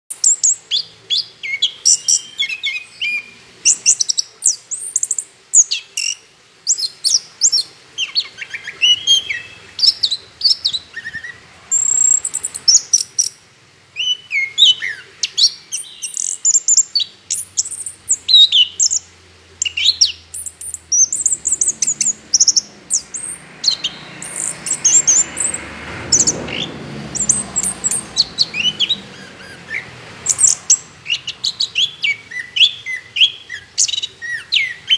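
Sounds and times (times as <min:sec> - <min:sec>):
soft background hiss: 0:00.1 - 0:34.9
thrush singing: 0:19.6 - 0:34.9.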